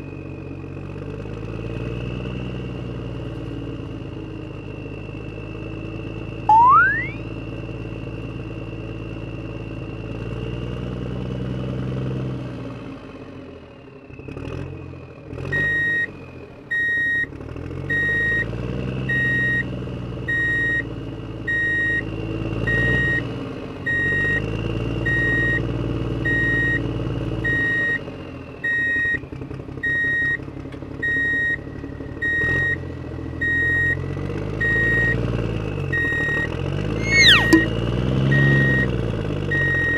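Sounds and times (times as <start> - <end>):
reversing beeper: 6.5 - 7.2, 37.0 - 37.7
rising whistle: 6.5 - 7.2, 37.0 - 37.7.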